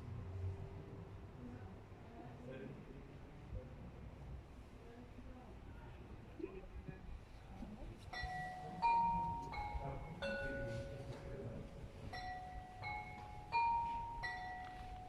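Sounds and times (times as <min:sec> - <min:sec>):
porcelain bells playing a melody: 0:08.1 - 0:15.0.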